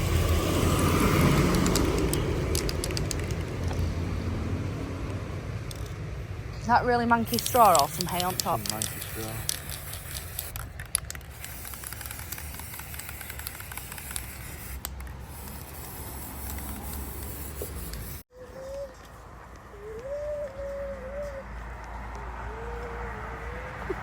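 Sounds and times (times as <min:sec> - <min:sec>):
rustling hiss: 0:07.0 - 0:18.2
low wavering animal call: 0:18.3 - 0:24.0.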